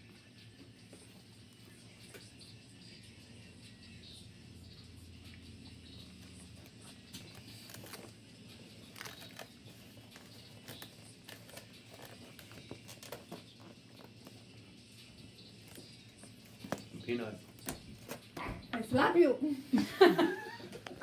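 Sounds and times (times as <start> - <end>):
snack packet crinkling: 6.4 - 14.3.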